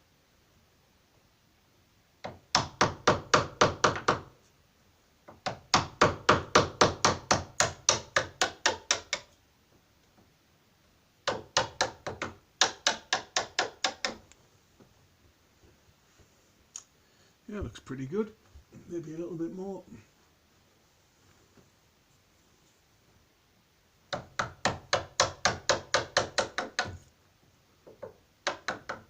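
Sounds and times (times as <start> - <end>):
chisel being struck: 5.5 - 9.3, 11.3 - 14.2.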